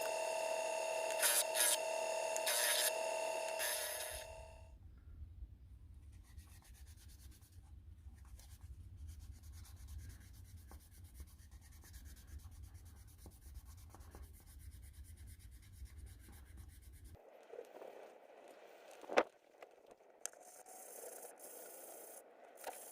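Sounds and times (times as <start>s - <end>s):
soft sanding rubbing: 6.1s - 19.0s.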